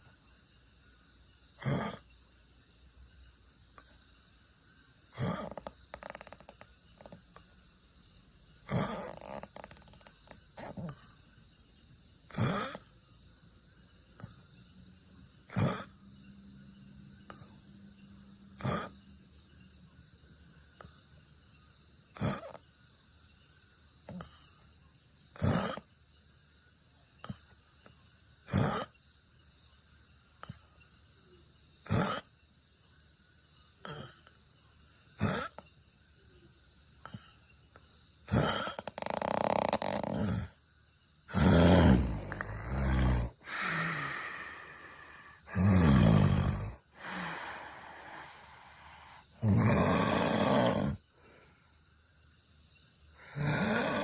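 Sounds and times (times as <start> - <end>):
person snoring: 8.7 - 11.0, 38.3 - 40.6, 41.3 - 51.0, 53.2 - 54.0.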